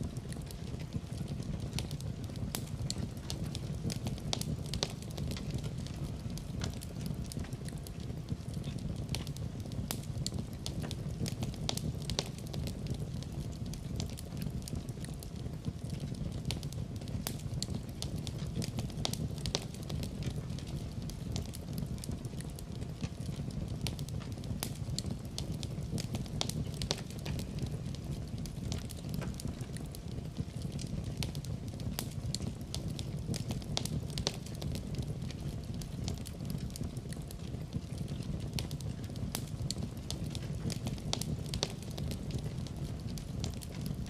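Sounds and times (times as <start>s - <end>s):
fire crackling and popping: 0.0s - 44.0s
low steady rumble: 0.0s - 44.0s.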